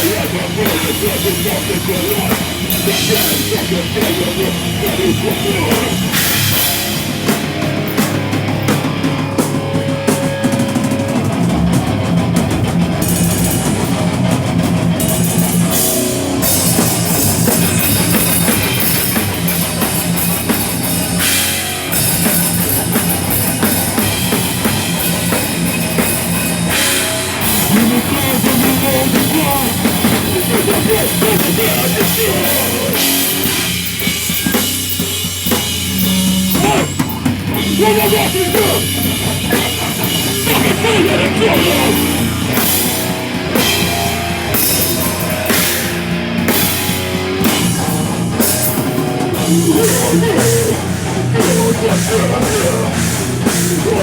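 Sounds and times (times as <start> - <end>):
distorted guitars: 0.0 - 54.0
drum kit: 0.0 - 54.0
live rock band playing: 0.0 - 54.0.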